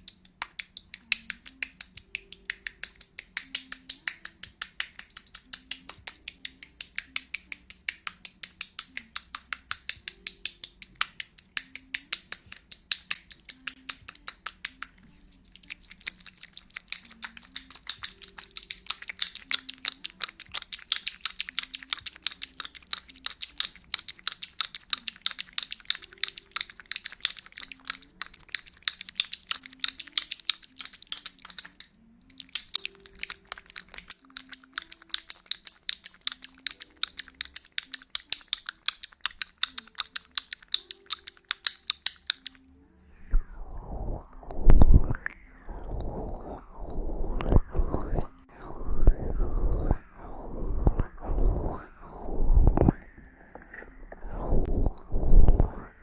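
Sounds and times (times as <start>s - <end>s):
tongue clicking: 0.0s - 56.0s.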